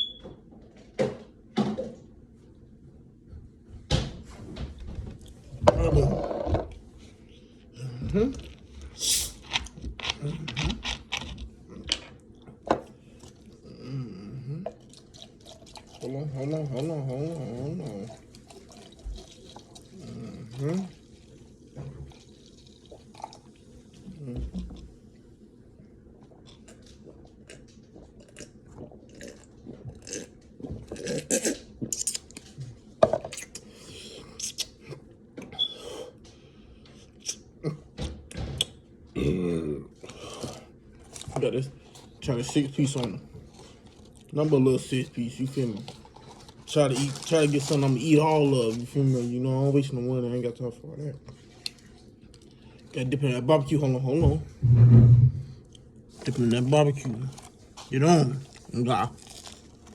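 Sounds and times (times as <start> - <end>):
low vocal hum: 5.6 - 6.4, 7.1 - 9.2, 10.0 - 10.9, 13.0 - 14.9, 16.0 - 18.3, 19.8 - 21.1, 24.0 - 25.0, 39.1 - 40.8
eating noises: 7.7 - 24.8, 26.2 - 36.2, 38.6 - 48.9
person chewing crunchy food: 8.3 - 13.8, 14.7 - 16.2, 16.8 - 21.4, 22.1 - 24.3, 26.2 - 32.6, 43.3 - 44.4, 45.6 - 48.2, 55.6 - 59.9.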